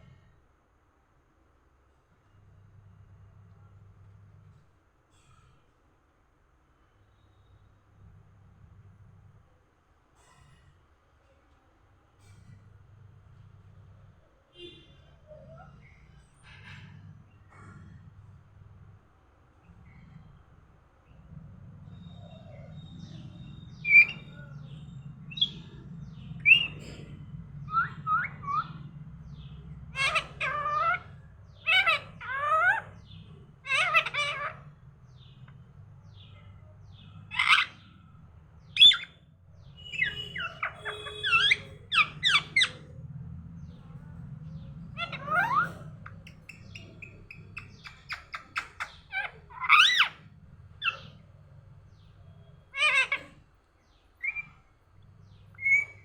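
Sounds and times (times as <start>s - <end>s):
low steady hum: 6.8s - 56.0s
parrot squawks and whistles: 39.7s - 42.8s, 54.2s - 54.6s, 55.6s - 56.0s.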